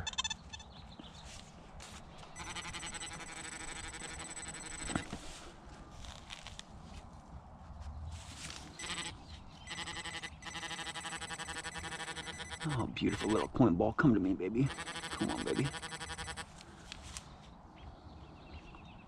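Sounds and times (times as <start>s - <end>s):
metal detector pulsing buzz: 2.4s - 5.1s, 9.7s - 13.5s, 14.7s - 16.4s.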